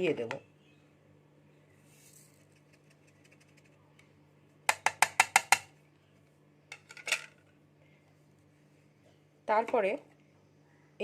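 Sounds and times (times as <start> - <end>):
utensil tapping against a bowl: 4.7 - 5.7.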